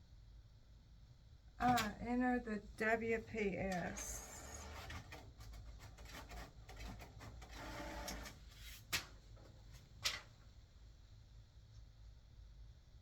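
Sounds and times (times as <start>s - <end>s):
printer whirring and rattling: 3.7s - 8.6s.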